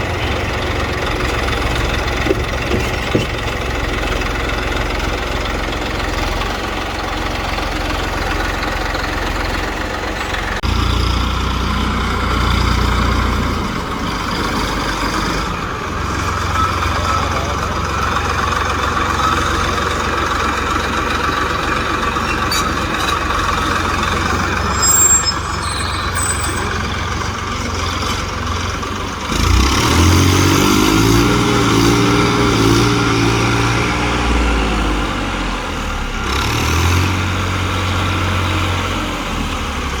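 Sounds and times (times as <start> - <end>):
diesel engine rumbling: 0.0 - 40.0
pitched engine drone: 10.6 - 35.7
brief high squeaks: 22.3 - 27.4.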